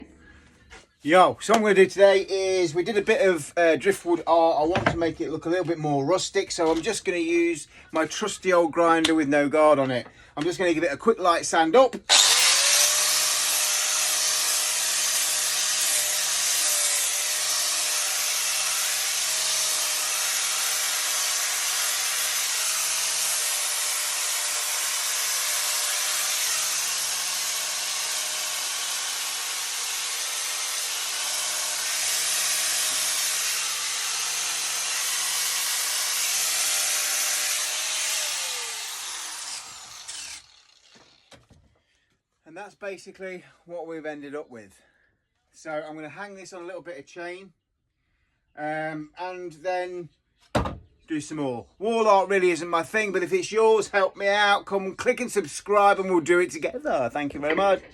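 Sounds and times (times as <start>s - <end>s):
angle grinder motor whine: 12.1s - 41.5s.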